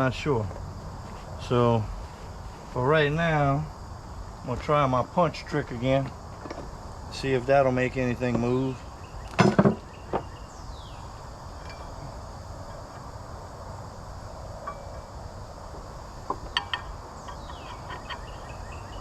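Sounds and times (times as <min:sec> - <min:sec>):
low background hum: 0:00.0 - 0:19.0
light metallic clinks: 0:11.6 - 0:12.8, 0:14.6 - 0:15.1, 0:16.5 - 0:18.6.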